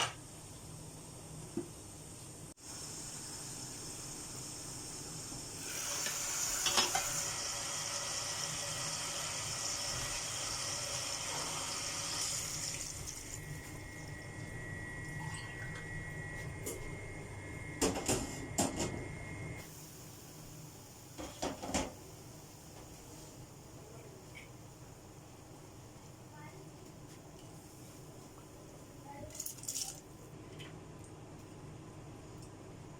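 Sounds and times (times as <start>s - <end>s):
water running: 5.4s - 15.9s.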